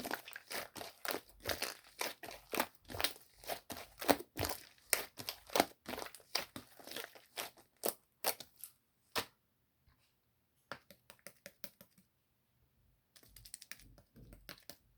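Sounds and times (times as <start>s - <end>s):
slime squished and stretched: 0.0s - 9.3s.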